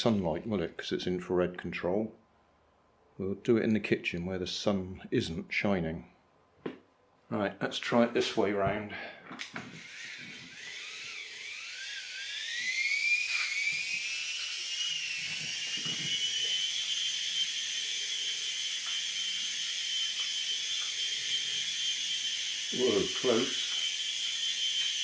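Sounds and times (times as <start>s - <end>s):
small electric motor whining: 9.4s - 25.0s.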